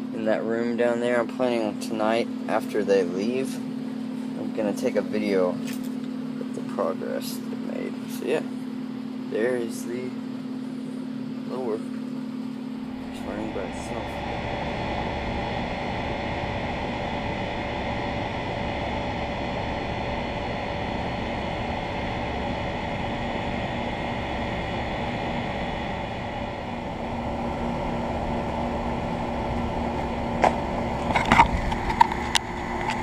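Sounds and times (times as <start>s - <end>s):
blower fan whooshing air: 0.0s - 33.0s
faint constant hum: 0.0s - 33.0s.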